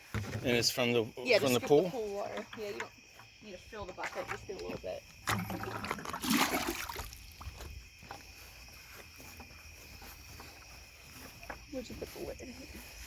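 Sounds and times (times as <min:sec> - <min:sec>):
crickets chirping: 0:00.0 - 0:13.0
water splashing: 0:04.0 - 0:07.6.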